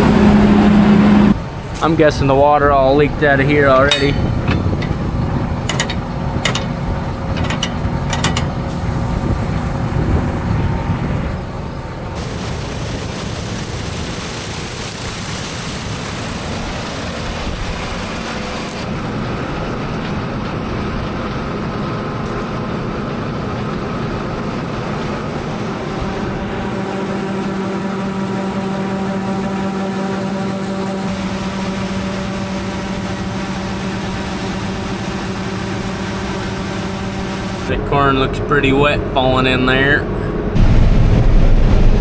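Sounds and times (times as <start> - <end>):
combine harvester rumbling: 0.0 - 42.0
hissing rush: 1.4 - 16.3.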